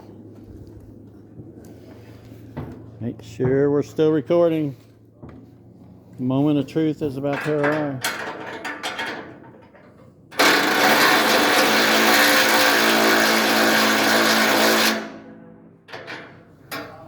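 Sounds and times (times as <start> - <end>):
small electric motor running: 10.4 - 15.2.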